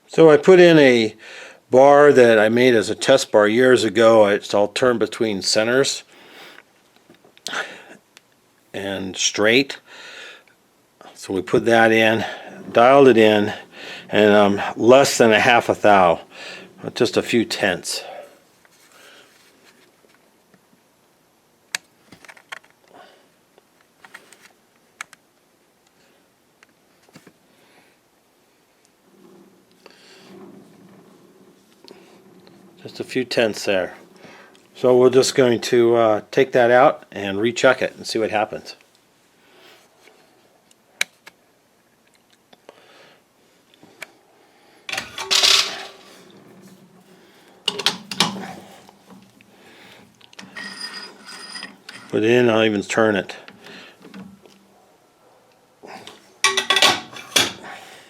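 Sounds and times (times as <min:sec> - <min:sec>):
chuck key metal clicks and clanks: 0:47.7 - 0:48.6.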